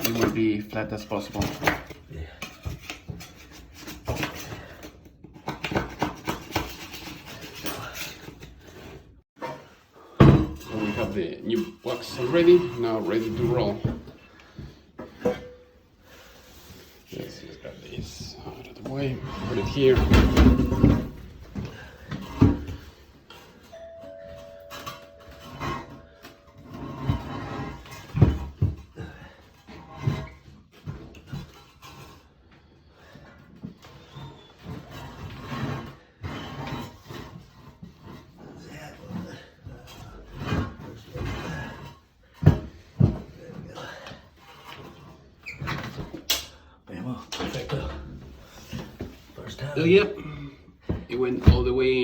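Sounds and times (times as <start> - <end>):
tools knocking and bumping: 10.2 - 11.7, 18.8 - 23.6.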